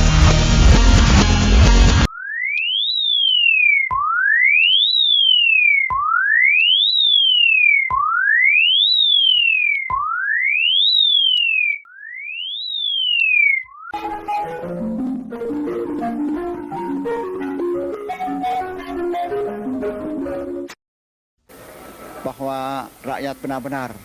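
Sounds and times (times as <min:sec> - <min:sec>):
gliding synthetic warning siren: 0:02.0 - 0:20.6.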